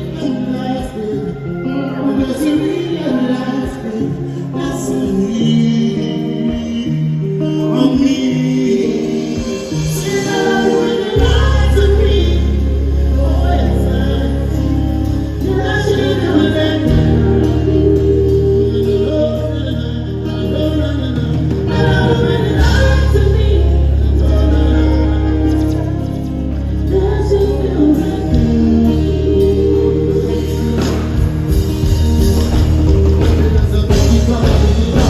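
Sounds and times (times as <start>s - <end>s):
held chords: 0.0s - 35.0s
person singing: 0.0s - 35.0s
deep bass notes: 9.7s - 35.0s.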